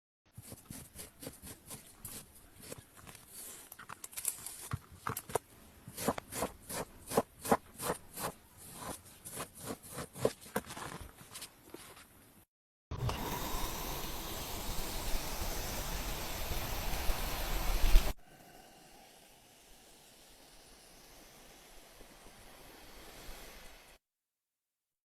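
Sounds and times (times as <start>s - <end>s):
crunching of sand being cut: 5.9s - 12.0s.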